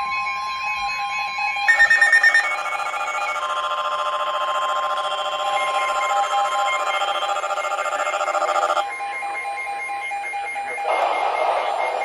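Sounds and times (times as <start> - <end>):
electronic alarm beeping: 0.0 - 12.0
rapidly pulsing electronic alarm: 0.0 - 12.0
weather radio alert tone: 1.7 - 9.6.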